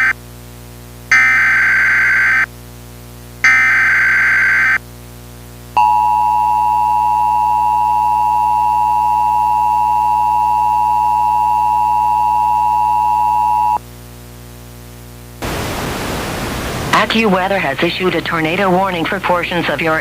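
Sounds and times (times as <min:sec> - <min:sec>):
two-tone attention signal: 0:05.8 - 0:13.8.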